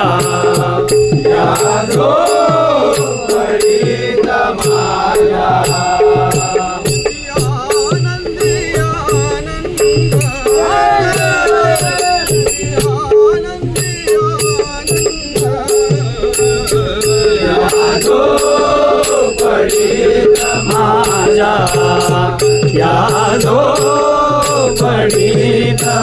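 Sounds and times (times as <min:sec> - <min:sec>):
ringing percussion strokes: 0:00.0 - 0:26.0.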